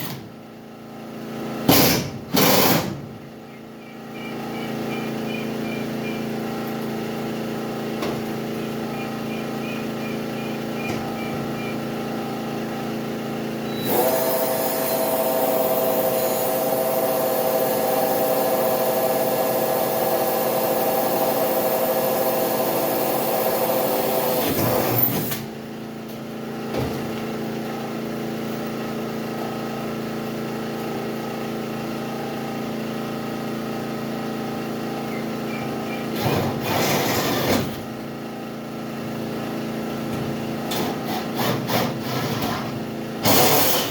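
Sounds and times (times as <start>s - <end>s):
small engine droning: 0.0s - 26.6s
power tool running: 1.0s - 3.1s, 4.5s - 26.6s, 27.7s - 43.9s.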